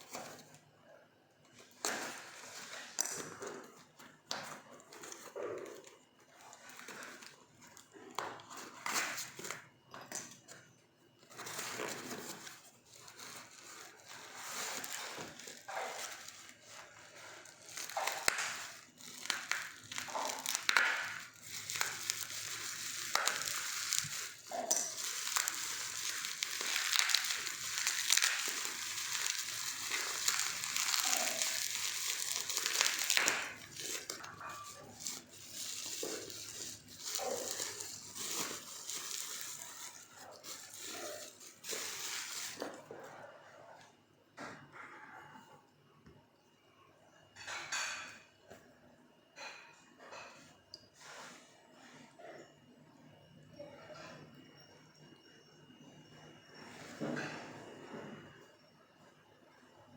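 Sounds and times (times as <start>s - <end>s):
packaging crinkling and rustling: 0.0s - 0.6s, 1.5s - 10.6s, 11.2s - 43.1s
packaging rubbing or tearing: 11.3s - 42.8s.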